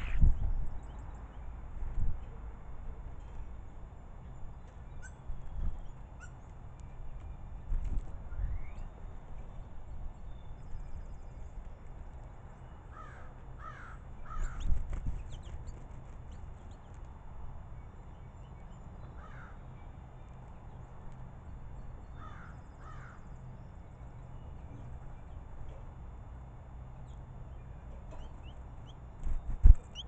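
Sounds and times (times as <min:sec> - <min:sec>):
harsh bird calls: 0:00.0 - 0:00.5
starlings clicking and whistling: 0:00.0 - 0:00.5, 0:28.1 - 0:30.0.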